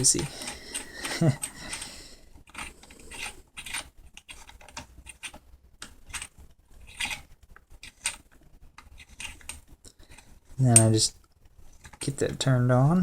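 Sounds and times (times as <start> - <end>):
metal clicks and scrapes: 0.0 - 11.0, 11.7 - 12.3.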